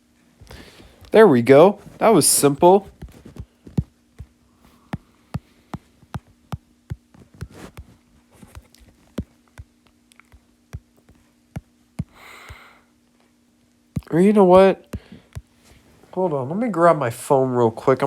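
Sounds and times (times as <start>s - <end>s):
faint steady hum: 0.0s - 18.0s
fingertips tapping on touchscreen: 2.6s - 12.8s, 14.0s - 15.5s.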